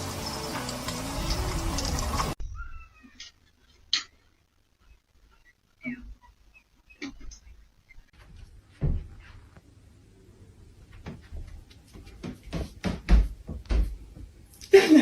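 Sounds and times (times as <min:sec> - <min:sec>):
knocks and thumps: 0:08.2 - 0:09.4, 0:11.0 - 0:14.4.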